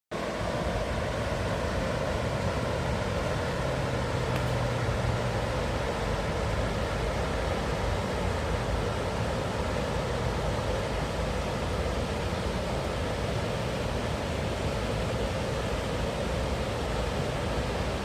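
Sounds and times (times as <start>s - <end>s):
river water rushing: 0.1s - 18.0s.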